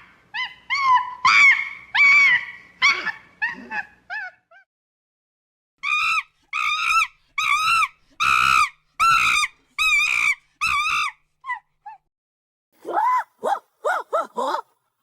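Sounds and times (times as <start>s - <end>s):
chimpanzee screaming: 0.7s - 4.4s, 5.8s - 11.1s, 12.8s - 14.6s
chimpanzee short call: 12.8s - 14.6s.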